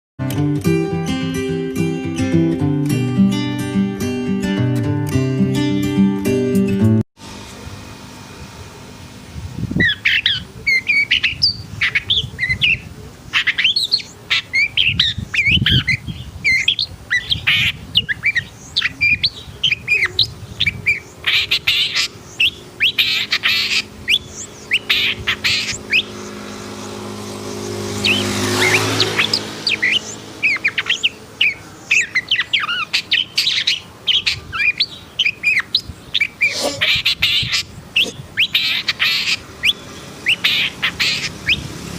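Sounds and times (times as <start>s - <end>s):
engine passing: 7.2s - 41.9s
bird chirps and squawks: 9.8s - 26.8s, 28.0s - 41.7s.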